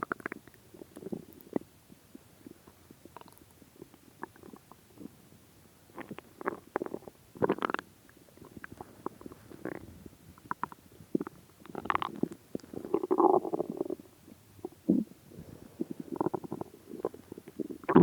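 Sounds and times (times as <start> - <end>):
stomach growling and gurgling: 0.0 - 1.8, 5.9 - 15.2, 15.8 - 18.0.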